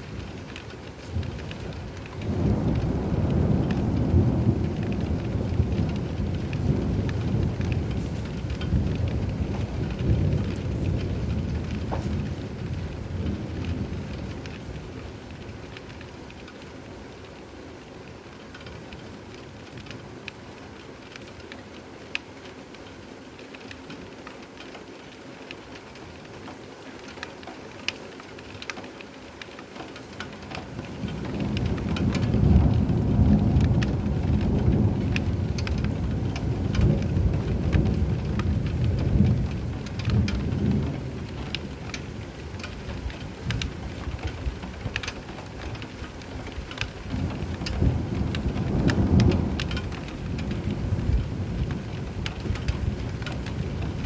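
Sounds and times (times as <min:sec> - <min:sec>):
rain falling: 0:00.0 - 0:54.0
rolling thunder: 0:01.0 - 0:15.8, 0:30.6 - 0:54.0.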